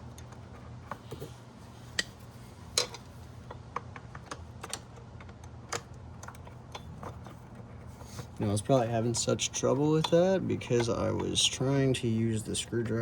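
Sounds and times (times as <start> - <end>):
steady low hum: 0.0 - 13.0
hand tools clicking and tapping: 2.8 - 13.0.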